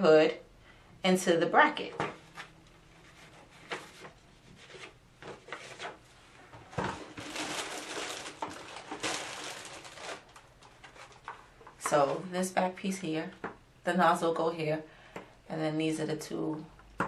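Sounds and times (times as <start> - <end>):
plastic rubbing and scraping: 2.4 - 12.2.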